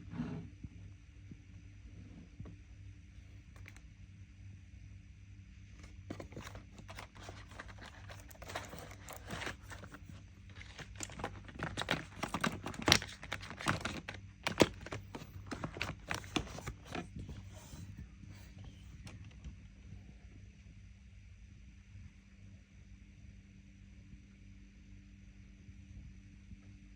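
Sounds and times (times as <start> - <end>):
small items clicking and tapping: 5.8 - 17.3.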